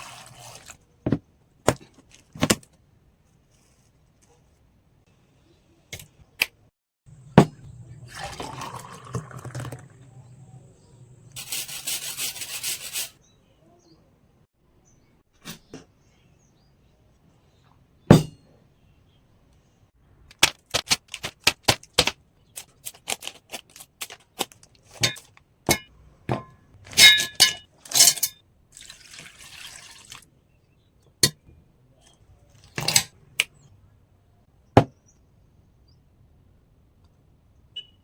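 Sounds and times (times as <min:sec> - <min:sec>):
utensils and glassware clinking: 0:26.9 - 0:28.4.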